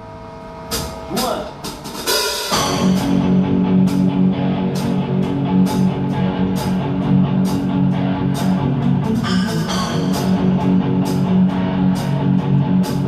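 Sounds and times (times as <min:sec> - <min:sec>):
guitar: 0:00.0 - 0:13.0
cymbal hits: 0:00.7 - 0:04.0, 0:09.2 - 0:11.2
sustained low note: 0:02.6 - 0:13.0.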